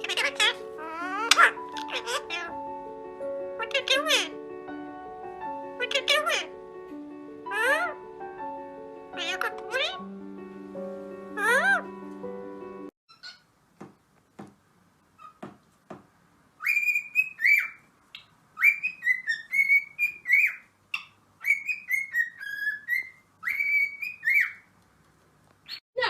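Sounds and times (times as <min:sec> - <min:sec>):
parrot whistling: 0:00.0 - 0:02.6, 0:16.6 - 0:24.7.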